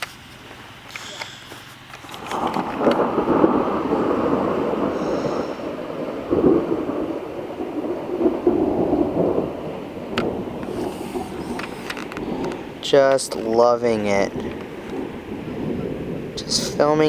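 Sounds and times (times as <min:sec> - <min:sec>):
thunder rumbling: 0:02.0 - 0:17.0.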